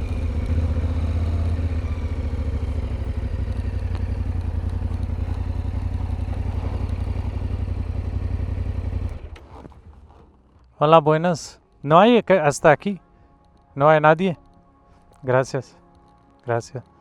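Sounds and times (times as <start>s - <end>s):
motorcycle engine running: 0.0s - 10.8s.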